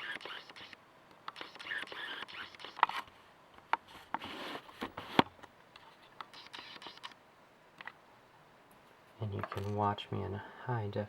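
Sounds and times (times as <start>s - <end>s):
light scraping of small parts: 8.7s - 9.9s.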